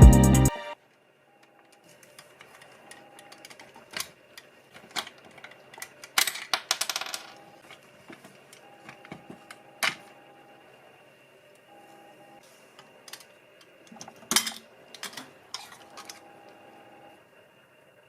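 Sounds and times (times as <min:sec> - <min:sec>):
small plastic parts clicking: 0:01.7 - 0:07.8, 0:12.8 - 0:16.2.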